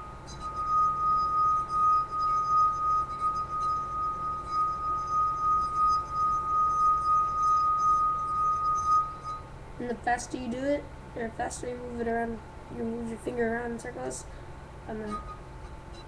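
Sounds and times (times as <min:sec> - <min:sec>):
singing wine glass ringing tone: 0:00.0 - 0:09.5, 0:15.0 - 0:16.0.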